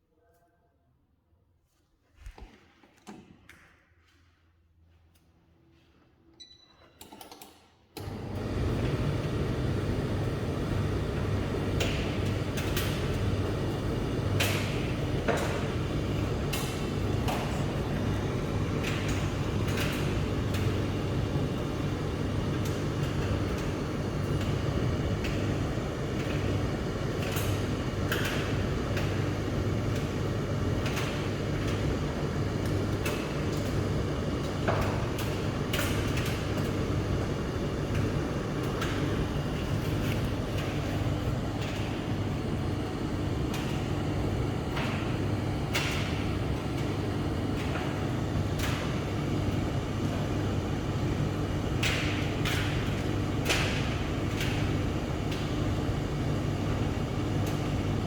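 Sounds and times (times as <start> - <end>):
tumble dryer humming: 8.0 - 58.0.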